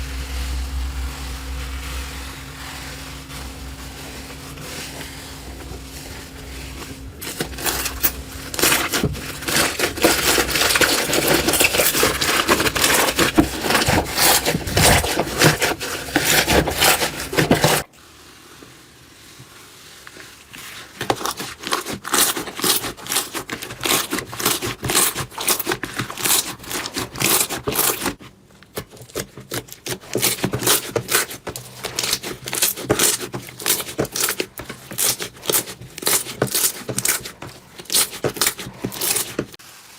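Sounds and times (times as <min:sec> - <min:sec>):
slime squeezed crackling: 0:29.0 - 0:39.5.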